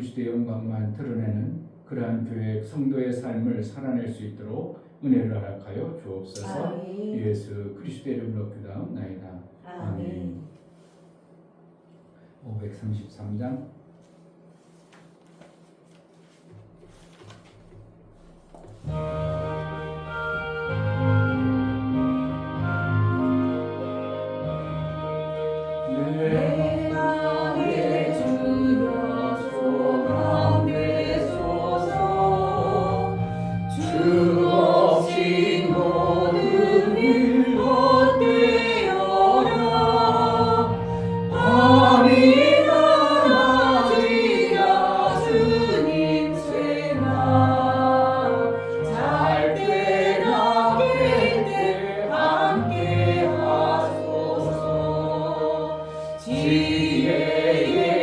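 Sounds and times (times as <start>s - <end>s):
sustained instrumental accompaniment: 18.7s - 58.0s
group singing a hymn: 25.6s - 58.0s.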